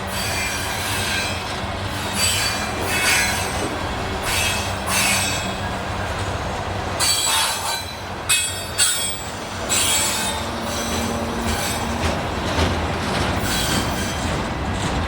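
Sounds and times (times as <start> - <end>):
train low rumble: 0.0 - 15.0
train wheels squealing on rails: 0.0 - 15.0.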